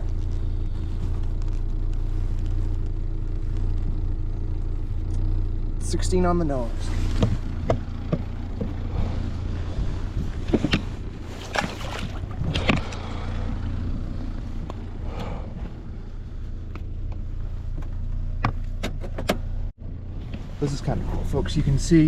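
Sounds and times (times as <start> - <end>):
boat motor humming: 7.2 - 17.1.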